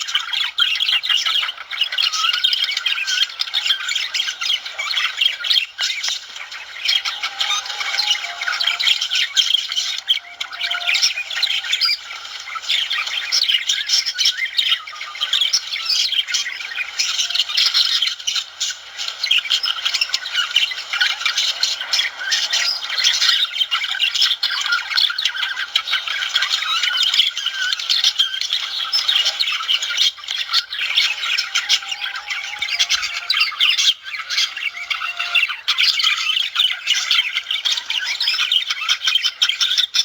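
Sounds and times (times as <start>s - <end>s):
budgerigars chirping and warbling: 0.1s - 40.0s
short whistled notes: 6.4s - 12.4s, 30.8s - 35.7s.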